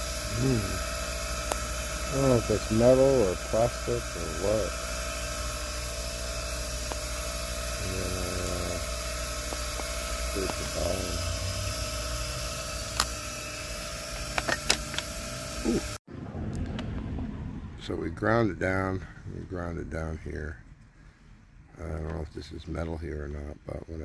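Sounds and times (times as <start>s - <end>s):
rotary grinder grinding: 0.0s - 16.0s.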